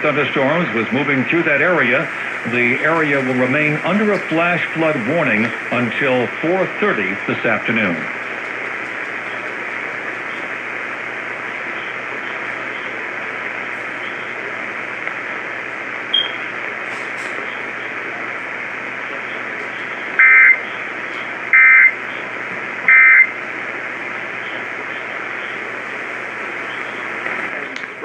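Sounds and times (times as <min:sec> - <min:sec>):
radio hiss: 0:00.0 - 0:28.0
data burst tones: 0:16.1 - 0:16.5, 0:20.2 - 0:20.8, 0:21.5 - 0:22.1, 0:22.8 - 0:23.4.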